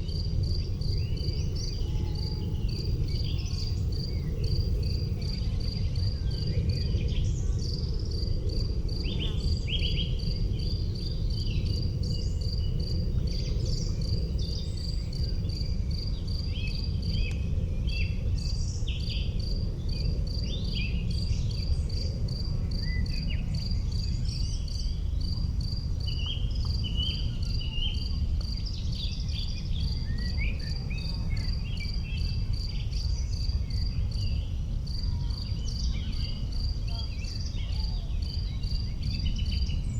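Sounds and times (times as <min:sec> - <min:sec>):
insect chirping: 0:00.0 - 0:17.2.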